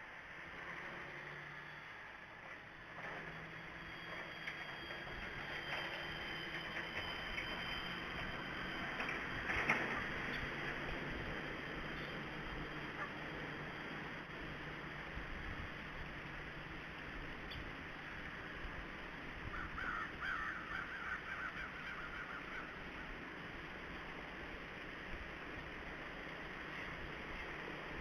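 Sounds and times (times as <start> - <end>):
steady outdoor hiss: 0.0 - 28.0
woodpecker calling: 19.5 - 23.0.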